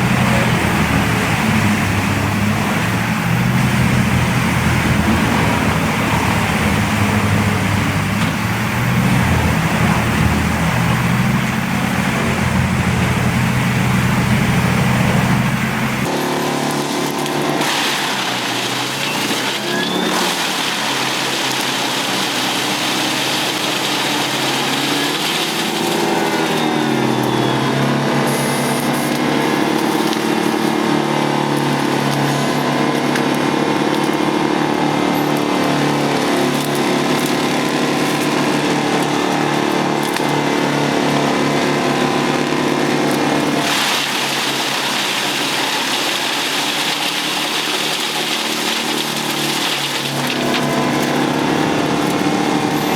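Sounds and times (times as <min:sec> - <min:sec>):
higher-pitched engine: 0:00.0 - 0:17.6, 0:46.2 - 0:52.9
wood chipper engine humming: 0:00.0 - 0:52.9.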